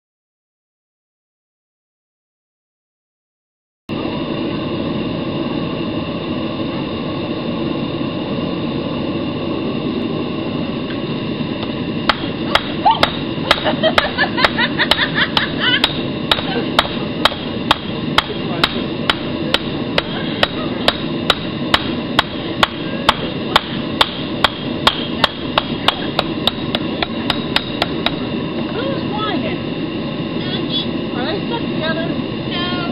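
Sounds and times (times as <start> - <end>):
forge running: 3.9 - 32.9
hammer striking steel on anvil: 12.1 - 28.3.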